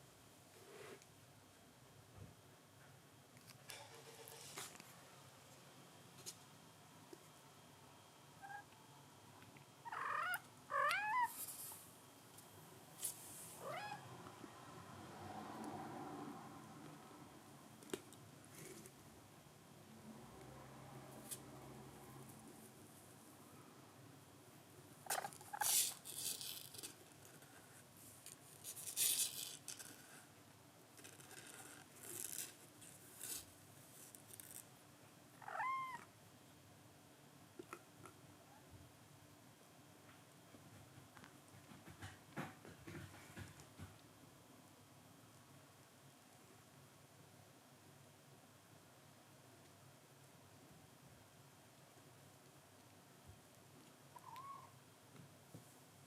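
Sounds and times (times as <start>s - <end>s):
kitten mewing: 9.8s - 11.4s, 13.6s - 14.1s, 35.4s - 36.1s, 54.1s - 54.8s
kitten squeaks: 9.9s - 11.4s, 54.2s - 54.8s
soft rustle: 11.2s - 13.8s.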